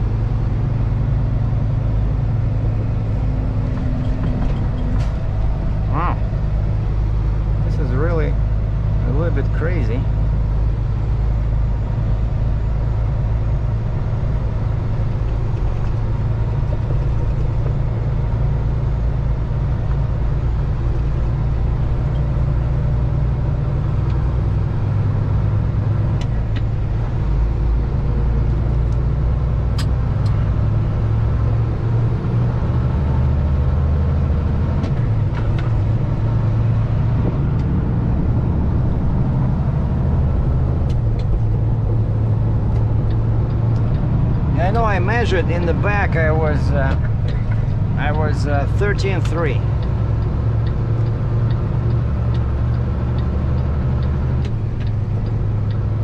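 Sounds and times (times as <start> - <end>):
truck diesel engine droning: 0.0 - 56.0.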